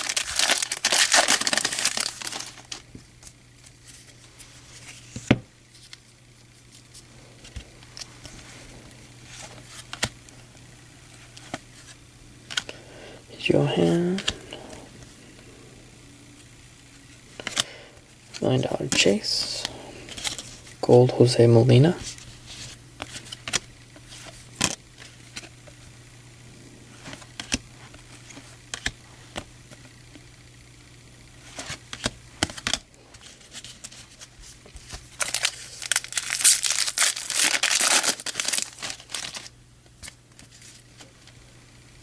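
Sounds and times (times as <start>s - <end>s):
foil wrapper crinkling and tearing: 0.0s - 4.2s, 31.5s - 41.1s
cards clicking and snapping: 31.5s - 34.0s.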